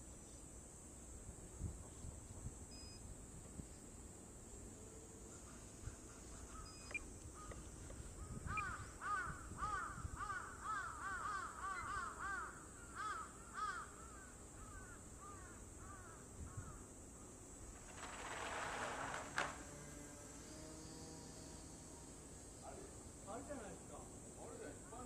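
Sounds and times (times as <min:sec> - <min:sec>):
bird calling: 0:05.3 - 0:17.3.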